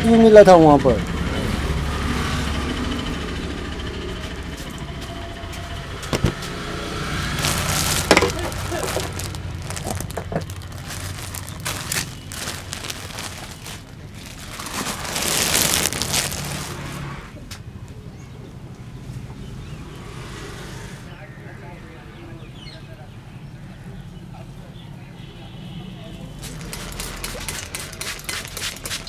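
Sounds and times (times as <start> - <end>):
traffic hum: 0.0 - 29.0
hands rubbing through hair: 7.4 - 16.8, 26.4 - 29.0.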